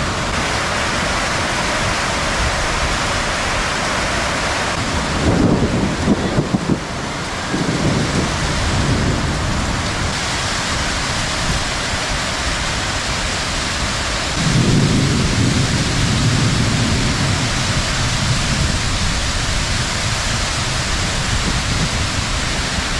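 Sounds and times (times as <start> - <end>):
heavy rain hissing: 0.0 - 22.9
thunder rumbling: 4.6 - 22.9.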